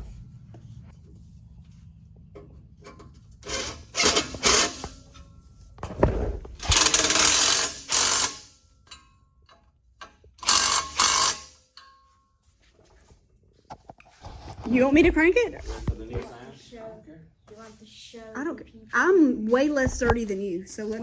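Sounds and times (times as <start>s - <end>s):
small motor-driven tool running: 3.4s - 4.9s, 6.6s - 8.5s, 10.4s - 11.6s.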